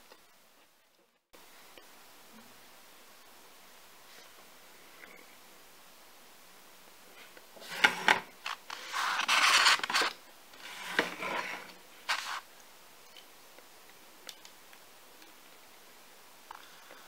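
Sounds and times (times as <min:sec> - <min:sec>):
rubbing or scraping: 0:07.6 - 0:12.5.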